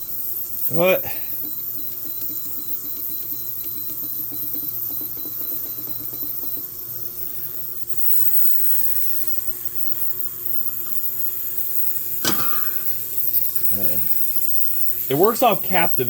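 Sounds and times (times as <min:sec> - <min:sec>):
ultrasonic cleaner humming: 0:00.0 - 0:16.0
sharp knock: 0:12.2 - 0:12.7.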